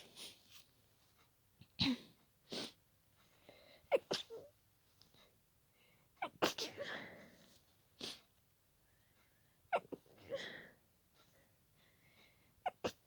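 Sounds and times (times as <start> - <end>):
person breathing: 3.3 - 3.9, 5.7 - 6.1, 6.8 - 7.6, 10.2 - 12.6
person stifling sneezes: 3.9 - 4.5, 6.2 - 7.1.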